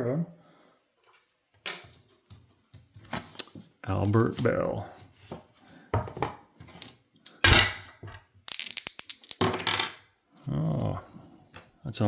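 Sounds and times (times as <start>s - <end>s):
dice rattling on hard surface: 8.5s - 10.0s.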